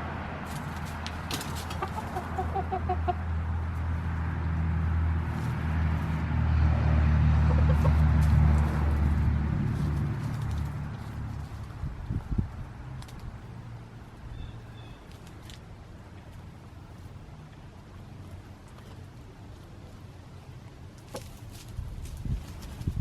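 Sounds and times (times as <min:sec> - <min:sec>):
chickens clucking: 0:01.2 - 0:03.4, 0:07.3 - 0:08.8.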